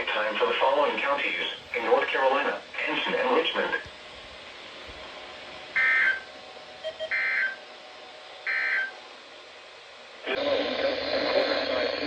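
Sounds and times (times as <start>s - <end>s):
radio hiss: 0.0s - 4.0s, 10.2s - 12.0s
digital data tone bursts: 8.5s - 9.0s.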